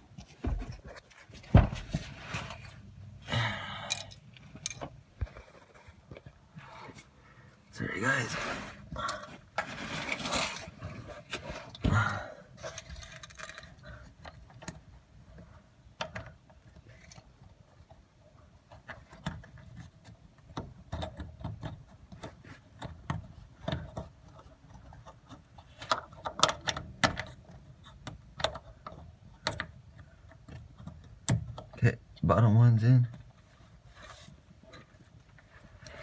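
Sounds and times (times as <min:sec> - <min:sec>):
clicks and rattles of metal fittings: 0:03.8 - 0:05.5, 0:12.6 - 0:14.8.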